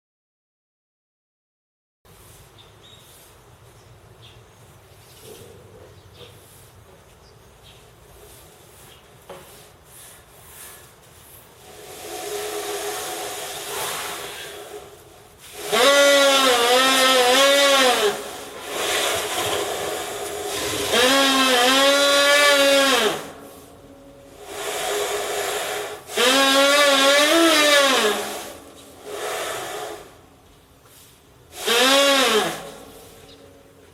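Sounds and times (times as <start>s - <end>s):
breathy hissing blows: 11.5s - 33.7s
elephant blowing pitched tones: 12.0s - 30.2s, 31.5s - 33.7s.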